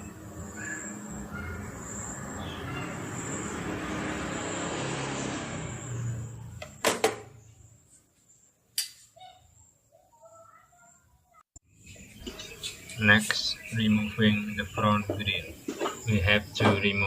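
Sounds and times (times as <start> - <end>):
motor vehicle passing: 0.0 - 7.9.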